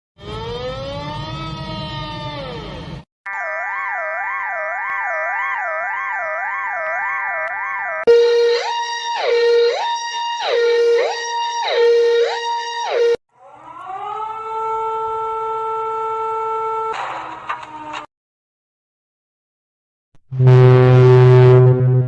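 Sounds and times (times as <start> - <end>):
siren sliding between pitches: 0.2 - 2.6, 3.3 - 16.9, 20.4 - 22.0
steady horn-like tone: 8.1 - 13.2, 20.3 - 22.0.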